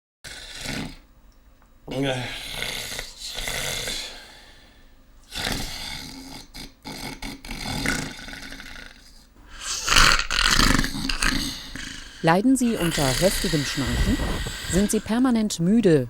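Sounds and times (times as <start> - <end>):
person snoring heavily: 0.3 - 1.0, 1.9 - 16.0.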